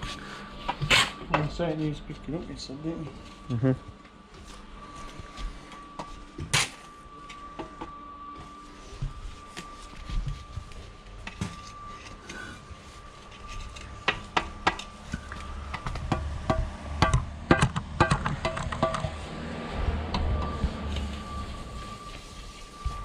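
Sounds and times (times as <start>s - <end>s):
faint high whine: 0.0s - 16.0s, 18.9s - 23.0s.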